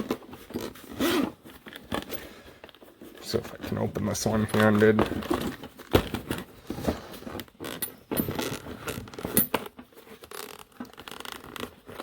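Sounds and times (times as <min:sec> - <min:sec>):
tool cart clicks and rattles: 0:07.7 - 0:08.6, 0:09.2 - 0:09.7.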